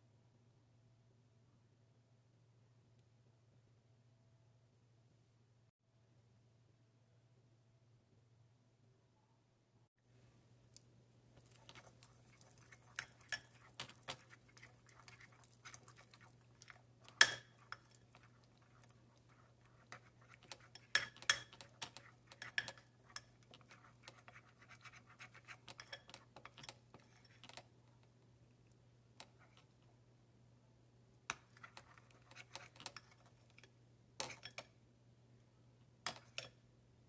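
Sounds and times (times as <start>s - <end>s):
spoon scraping a small bowl: 11.4s - 27.7s, 31.3s - 34.6s.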